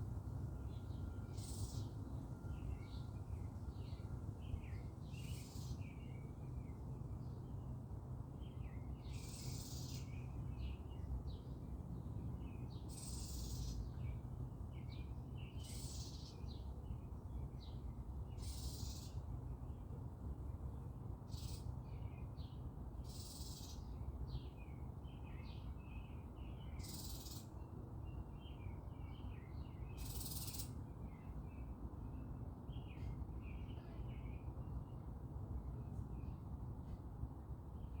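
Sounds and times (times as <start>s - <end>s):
faint bird chirps: 0.6s - 6.2s, 9.1s - 10.1s, 12.9s - 14.0s, 15.5s - 16.6s, 18.4s - 19.2s, 23.0s - 24.0s, 26.0s - 27.6s, 29.0s - 31.4s, 32.7s - 34.6s
small birds chirping: 3.8s - 6.8s, 12.6s - 14.1s, 17.6s - 19.2s, 22.4s - 27.5s, 29.0s - 31.4s.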